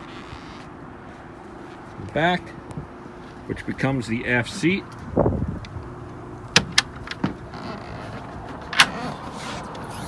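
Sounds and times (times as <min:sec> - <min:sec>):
sharp clicks and knocks: 0:06.5 - 0:07.5.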